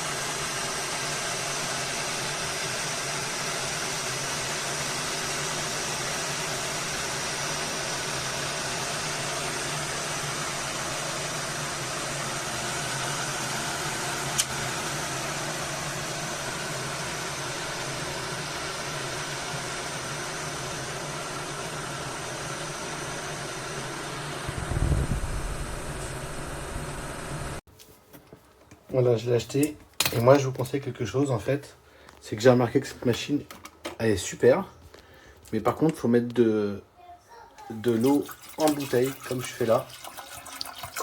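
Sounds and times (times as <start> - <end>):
kettle heating water: 0.0 - 27.6, 37.6 - 41.0.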